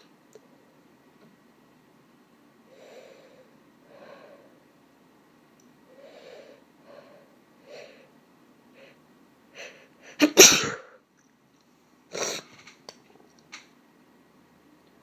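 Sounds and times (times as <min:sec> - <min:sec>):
woman sneezing: 0:10.2 - 0:11.0.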